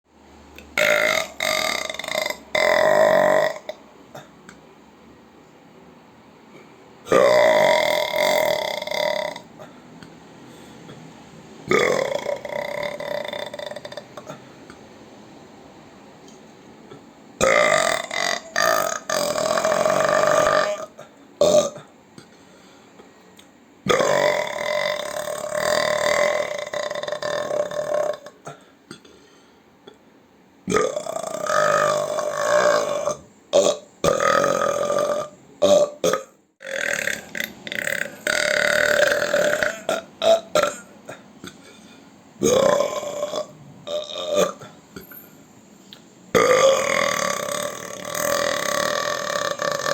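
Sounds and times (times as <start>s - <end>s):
person belching: 0.7s - 4.4s, 7.1s - 9.8s, 11.7s - 14.5s, 16.9s - 21.9s, 23.9s - 29.1s, 30.7s - 41.6s, 42.4s - 44.8s, 46.4s - 49.9s.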